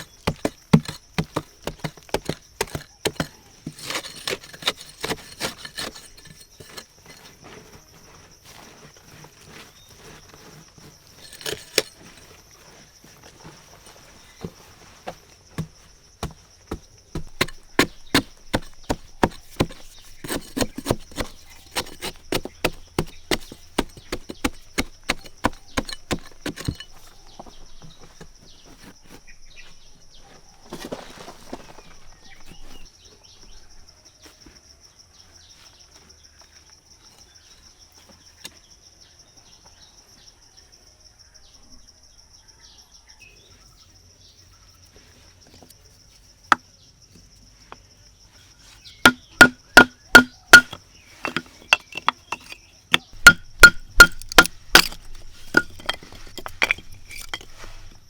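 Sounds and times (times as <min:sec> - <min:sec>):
wood chopping: 0:00.0 - 0:07.2, 0:11.2 - 0:12.4, 0:14.4 - 0:27.0, 0:49.0 - 0:57.9
rustle: 0:05.1 - 0:16.5, 0:26.5 - 0:33.0, 0:55.0 - 0:58.0.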